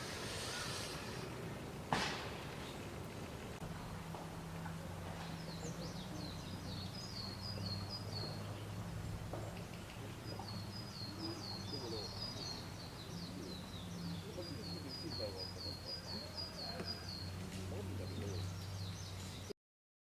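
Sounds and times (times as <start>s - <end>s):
small songbird singing: 5.2s - 19.5s.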